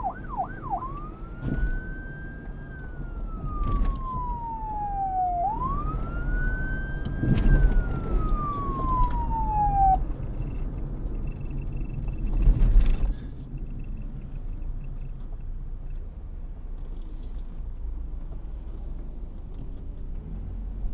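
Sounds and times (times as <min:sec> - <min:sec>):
police siren wail: 0:00.0 - 0:10.1.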